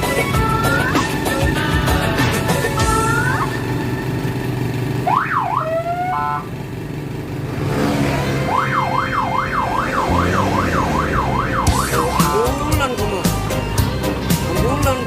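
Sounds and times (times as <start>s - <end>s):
electronic siren alarm warbling: 0.2s - 1.4s, 2.8s - 3.6s, 5.0s - 6.5s, 8.3s - 12.9s.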